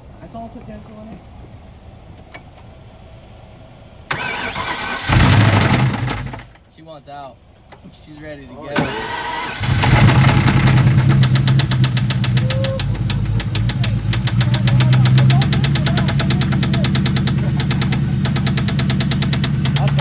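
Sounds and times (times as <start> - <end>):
car engine knocking: 5.0 - 6.6, 8.8 - 20.0.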